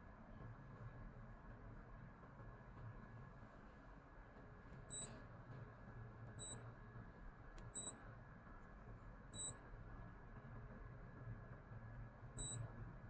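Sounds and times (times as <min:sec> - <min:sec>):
digital watch beeping: 0:09.4 - 0:09.6, 0:12.4 - 0:12.6.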